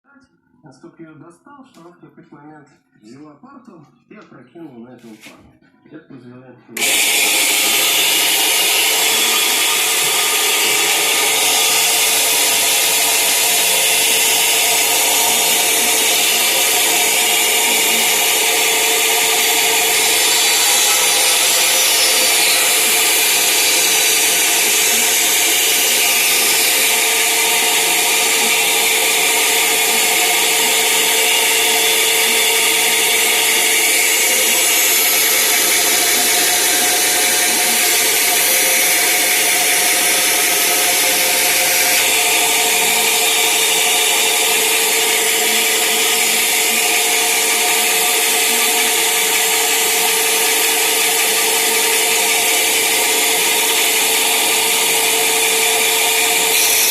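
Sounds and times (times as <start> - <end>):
band saw running: 6.8 - 56.9.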